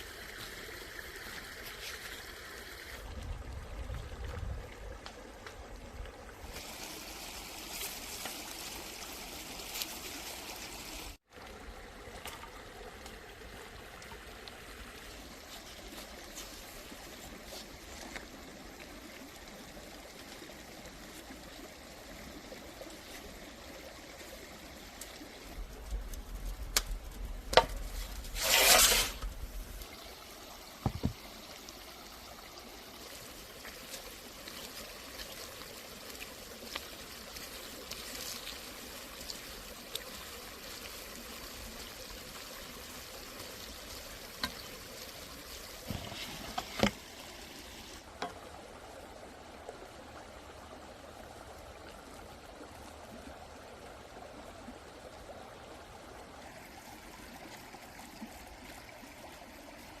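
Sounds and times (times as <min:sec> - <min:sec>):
trickling water: 0:00.0 - 1:00.0.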